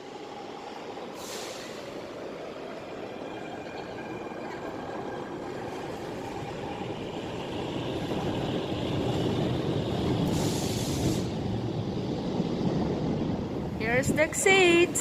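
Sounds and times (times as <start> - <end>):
train rumbling on tracks: 0.0 - 15.0
air hiss: 1.1 - 2.0, 10.2 - 11.4.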